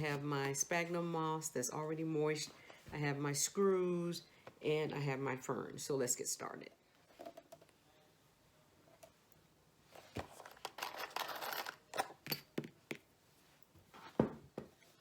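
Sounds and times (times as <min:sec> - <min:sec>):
rustling and crinkling: 0:09.9 - 0:11.7.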